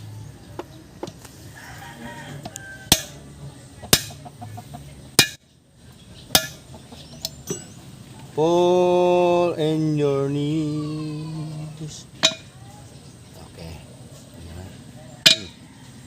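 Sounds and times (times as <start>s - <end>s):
hammer striking metal: 2.9s - 3.2s, 3.9s - 4.2s, 5.2s - 5.4s, 6.3s - 6.6s, 12.2s - 12.5s, 15.2s - 15.6s.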